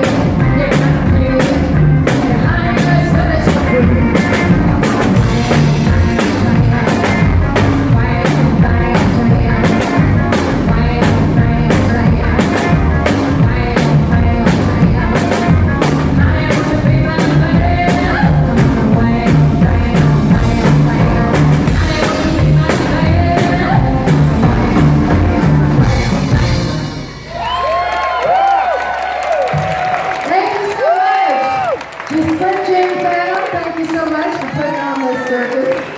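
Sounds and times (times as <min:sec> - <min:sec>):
fast driving drum beat: 0:00.0 - 0:27.5
live rockabilly band playing: 0:00.0 - 0:35.9.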